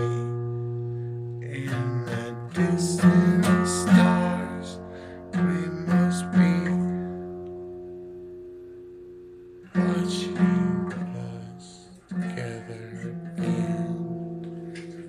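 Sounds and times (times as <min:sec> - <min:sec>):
acoustic guitar strumming chords: 0:00.0 - 0:15.0.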